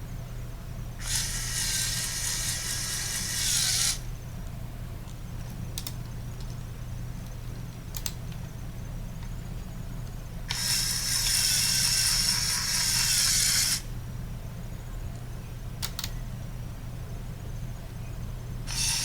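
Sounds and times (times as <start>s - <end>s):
toy motor whirring through gears: 1.0s - 4.1s, 10.5s - 13.9s, 18.7s - 19.0s.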